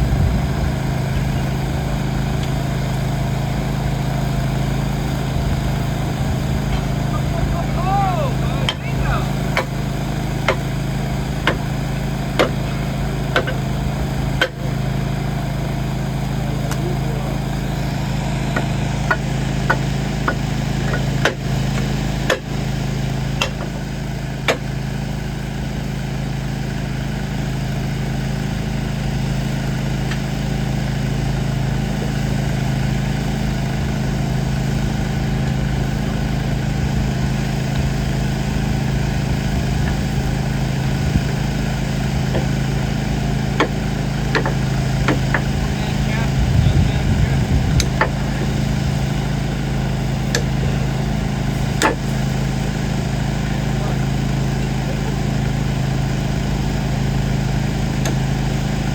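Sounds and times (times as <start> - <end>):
heavy machinery engine idling: 0.0 - 58.9
sharp knocks: 12.4 - 12.6, 13.3 - 13.6, 43.6 - 45.6, 51.8 - 52.1.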